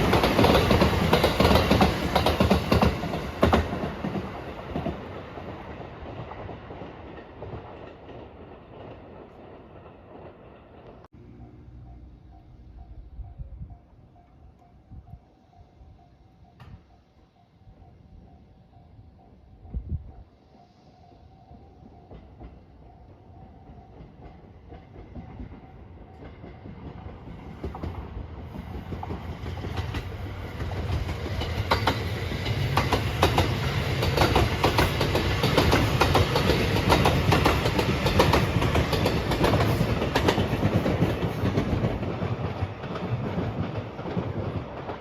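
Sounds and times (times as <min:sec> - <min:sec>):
train wheels clattering over rails: 0:00.0 - 0:11.1, 0:23.7 - 0:45.0.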